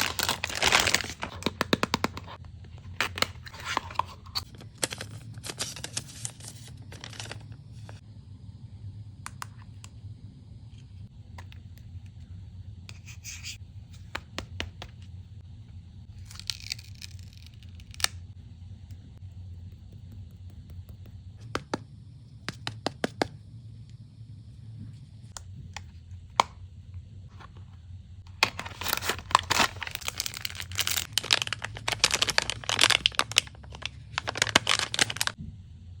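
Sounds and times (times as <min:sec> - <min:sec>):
wrapping tearing and crinkling: 0:00.0 - 0:02.4, 0:03.1 - 0:07.6, 0:16.2 - 0:18.2, 0:28.3 - 0:35.4
low steady hum: 0:00.0 - 0:36.0.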